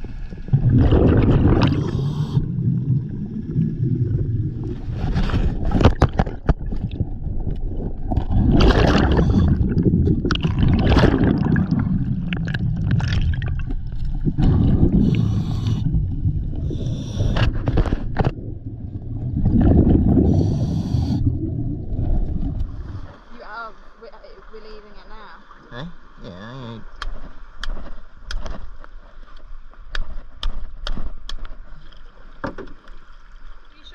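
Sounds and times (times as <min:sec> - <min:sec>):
water gurgling and sloshing: 0:00.0 - 0:33.9
low rumble: 0:06.8 - 0:23.4.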